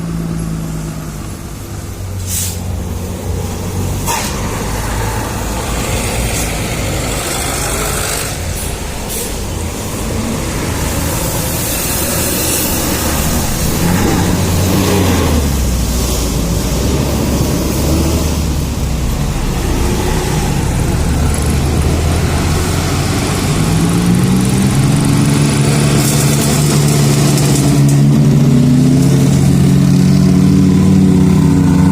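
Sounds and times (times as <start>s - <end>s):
bus engine running: 0.0s - 31.9s.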